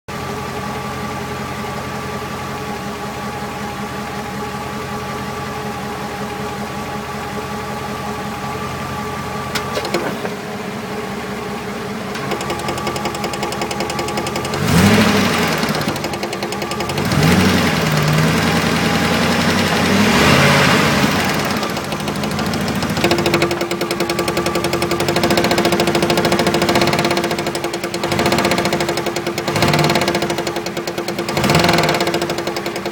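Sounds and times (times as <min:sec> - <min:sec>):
engine idling and revving: 0:00.1 - 0:32.9
engine knocking noise: 0:09.5 - 0:10.5, 0:12.1 - 0:32.9.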